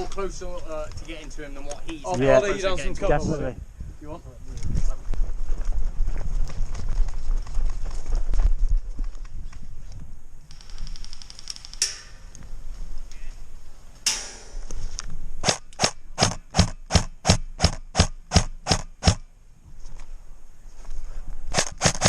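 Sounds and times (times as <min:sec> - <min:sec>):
airsoft rifle shots: 0:15.4 - 0:19.3, 0:21.5 - 0:22.0.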